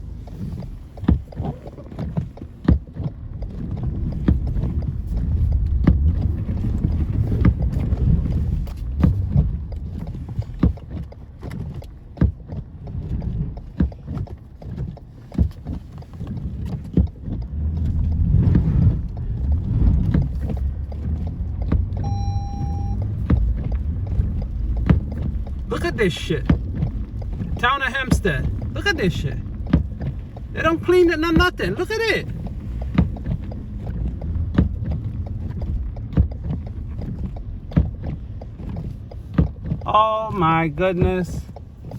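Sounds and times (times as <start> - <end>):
tyre and road rumble in car: 0.0 - 41.9
knocks and thumps: 15.3 - 40.0
short electronic beep: 22.0 - 23.1.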